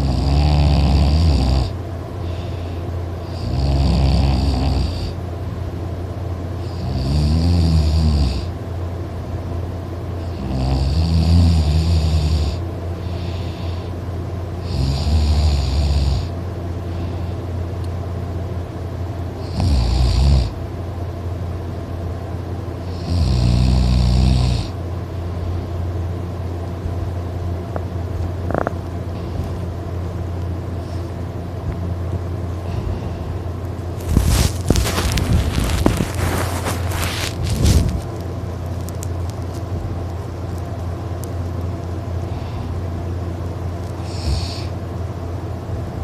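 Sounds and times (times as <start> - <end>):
person snoring loudly: 0.0 - 1.7, 3.3 - 5.2, 6.6 - 8.5, 10.2 - 12.6, 14.6 - 16.3, 19.4 - 20.5, 22.9 - 24.8, 44.0 - 44.7
steady low hum: 0.0 - 46.0.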